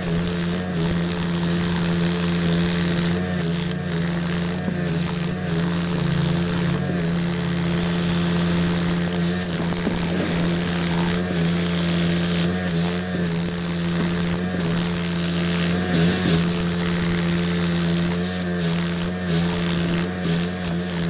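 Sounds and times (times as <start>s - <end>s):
heavy machinery engine humming: 0.0s - 21.0s.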